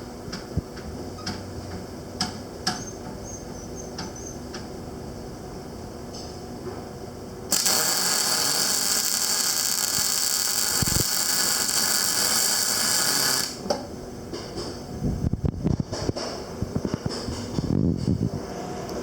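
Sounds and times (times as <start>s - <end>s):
welder machine hum: 7.4s - 13.8s
welding arc hissing and crackling: 7.5s - 13.7s.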